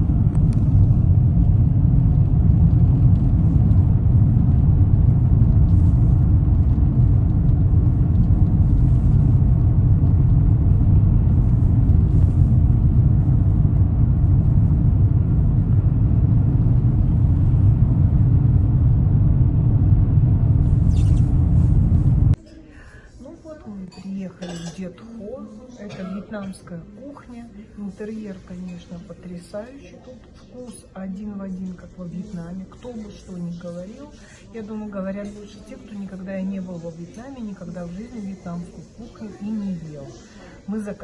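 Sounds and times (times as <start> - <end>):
car road and engine rumble: 0.0 - 22.4.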